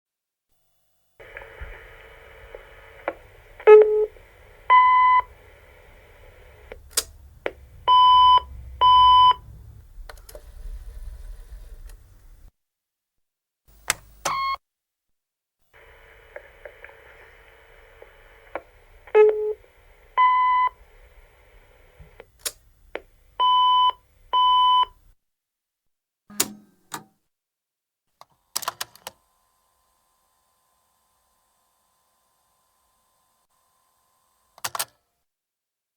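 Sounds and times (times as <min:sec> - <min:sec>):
answering machine beeps: 0:01.2 - 0:09.6, 0:14.3 - 0:14.6, 0:15.8 - 0:22.3, 0:22.9 - 0:25.0
answering machine tape running: 0:01.2 - 0:12.5, 0:15.8 - 0:24.9
tape mechanism clunks: 0:06.6 - 0:10.4, 0:26.3 - 0:27.1.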